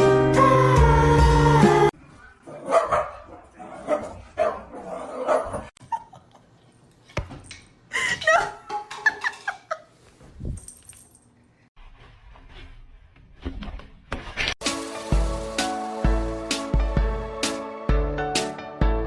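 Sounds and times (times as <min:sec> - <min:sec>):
dog yipping: 0:02.2 - 0:03.2
dog barking: 0:02.2 - 0:05.7.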